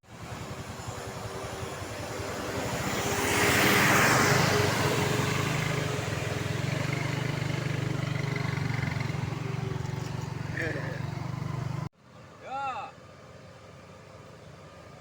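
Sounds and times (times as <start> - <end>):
bus passing by: 0.0 - 15.0
engine droning: 0.1 - 15.0.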